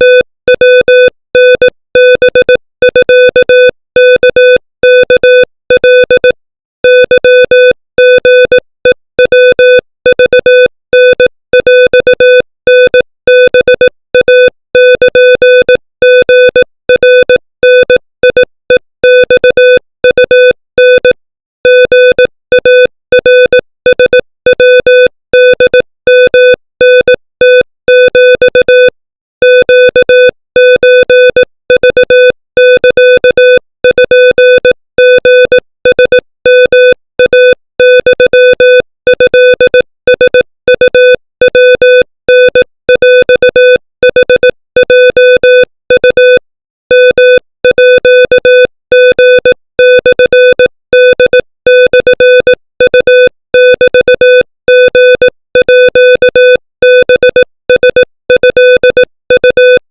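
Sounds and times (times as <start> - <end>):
morse code beeps: 0.0 - 59.8.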